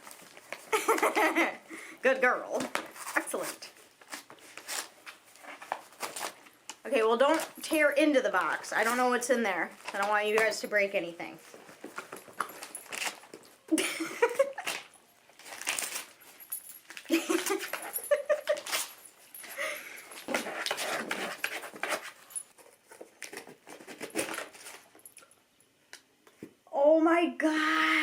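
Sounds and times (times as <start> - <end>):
wrapping paper tearing and rustling: 2.9 - 6.5, 12.0 - 13.5, 14.4 - 17.9.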